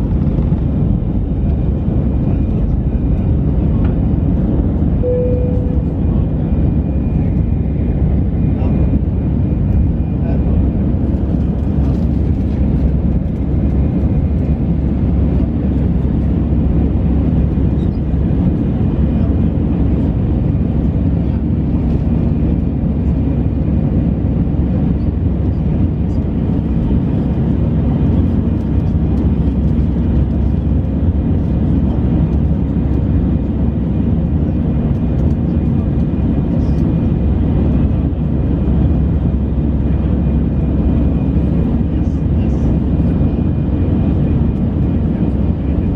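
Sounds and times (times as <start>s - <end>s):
faint hum: 0.0s - 10.7s
jet engine cabin rush: 0.0s - 45.9s.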